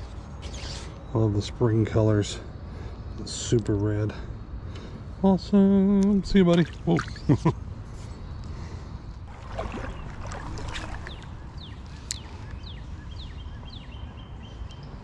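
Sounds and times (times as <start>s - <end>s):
creek water splashing: 6.4s - 7.4s, 9.2s - 12.3s
bird chirps: 9.8s - 15.0s.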